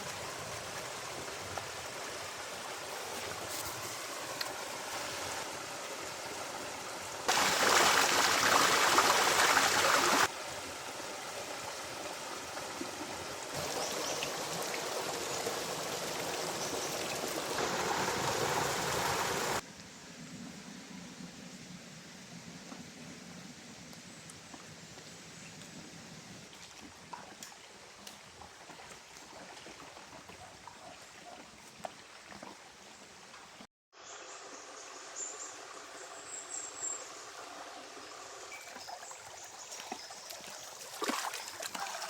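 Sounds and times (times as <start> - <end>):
stream water rushing: 0.0 - 19.6, 37.1 - 42.0.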